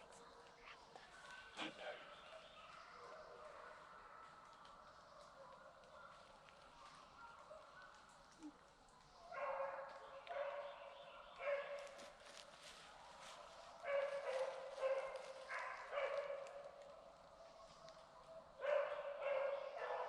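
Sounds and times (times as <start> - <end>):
hounds baying: 0.0 - 8.0.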